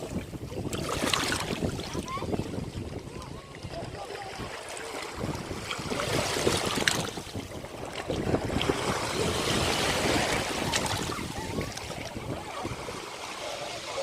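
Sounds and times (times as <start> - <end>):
ocean waves washing on shore: 0.0 - 14.0
sharp splashes: 0.6 - 2.2.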